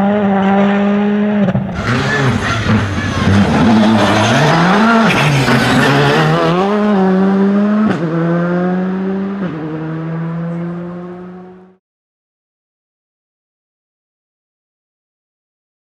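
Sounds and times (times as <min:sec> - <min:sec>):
rally car engine revving: 0:00.0 - 0:11.8.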